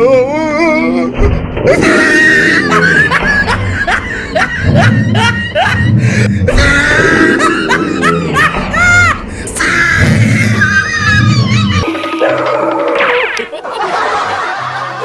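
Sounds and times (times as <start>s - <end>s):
music: 0.0s - 15.0s
laughter: 1.8s - 6.0s, 6.7s - 9.2s, 13.5s - 15.0s.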